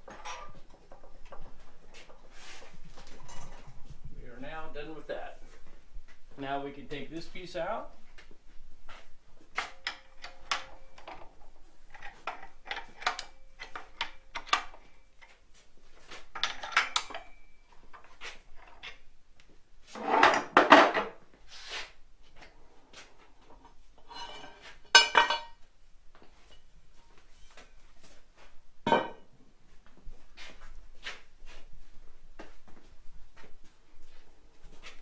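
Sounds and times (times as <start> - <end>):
steel parts knocking and clinking: 9.6 - 14.8, 16.3 - 19.0, 24.1 - 25.6
metal scraping clank: 24.0 - 25.6.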